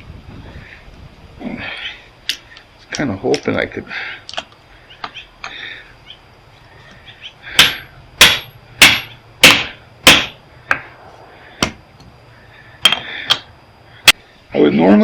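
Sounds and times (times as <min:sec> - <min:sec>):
metal tool striking metal: 0:07.6 - 0:10.4.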